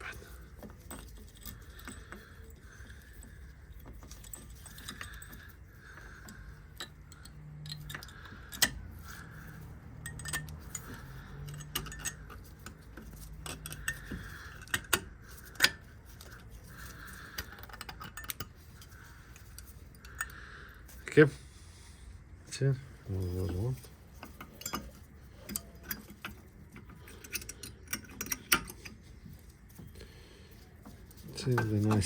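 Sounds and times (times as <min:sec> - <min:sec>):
metal clicks of brake pads: 0:00.5 - 0:21.1.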